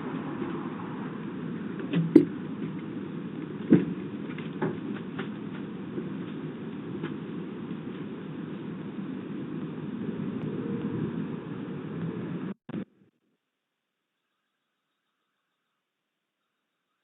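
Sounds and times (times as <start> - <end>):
outdoor background noise: 0.0 - 17.0.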